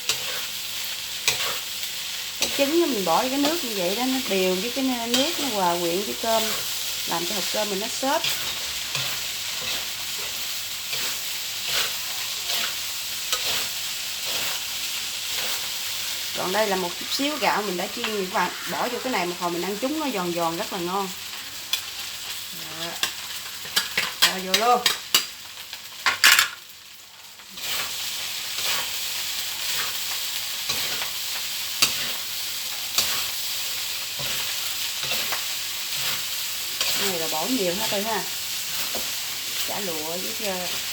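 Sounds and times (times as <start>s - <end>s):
spatula scraping pan: 0.0s - 0.6s, 1.2s - 20.6s
rice sizzling in a pan: 0.0s - 40.9s.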